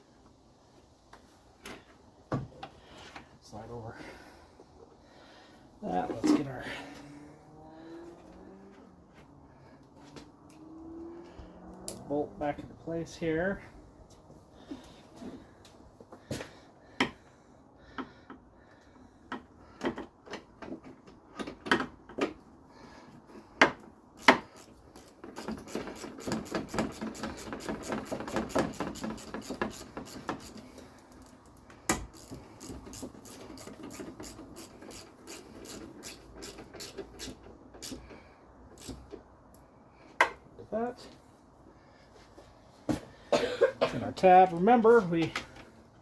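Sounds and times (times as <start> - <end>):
knocks of tools and plastic: 19.3 - 22.5, 23.6 - 30.6
hand ratchet clicking: 24.2 - 39.1.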